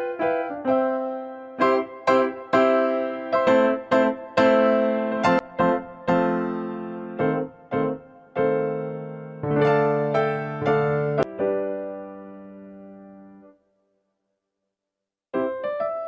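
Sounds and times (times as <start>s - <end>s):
piano chords: 0.0s - 13.6s, 15.4s - 16.0s.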